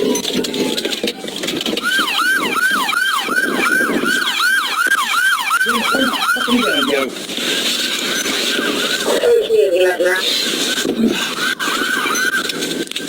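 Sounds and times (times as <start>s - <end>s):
road noise: 0.0s - 13.0s
police siren wailing and yelping: 0.1s - 7.2s, 7.9s - 13.0s.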